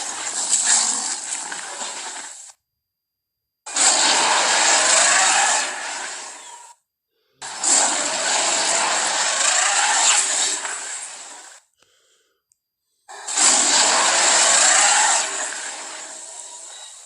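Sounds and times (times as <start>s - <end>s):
dinosaur roaring: 3.7s - 6.3s, 7.4s - 10.8s, 13.1s - 16.0s.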